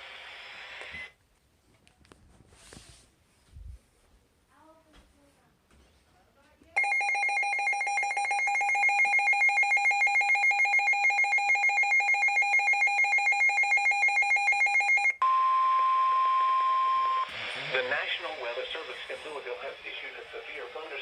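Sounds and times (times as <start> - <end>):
steady high alarm tone: 6.8 - 17.3.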